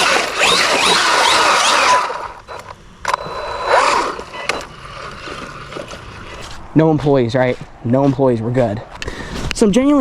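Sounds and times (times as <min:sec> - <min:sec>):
electric motor whining: 0:00.0 - 0:06.6
drivetrain and tyre noise: 0:00.0 - 0:10.0
clicks: 0:02.4 - 0:03.4, 0:04.1 - 0:04.7.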